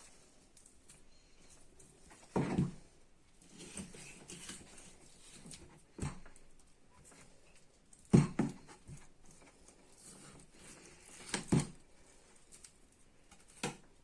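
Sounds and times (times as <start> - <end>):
kitchen knocks and thumps: 8.1 - 8.8.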